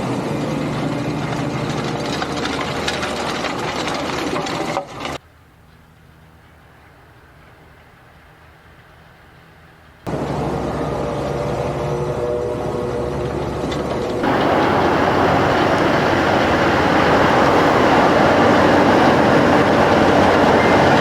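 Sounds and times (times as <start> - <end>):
tractor diesel engine under load: 0.0 - 21.0.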